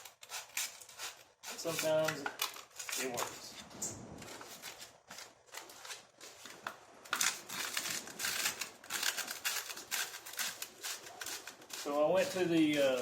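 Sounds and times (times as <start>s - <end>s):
sandpaper sanding plastic: 0.0s - 2.2s, 7.2s - 13.0s.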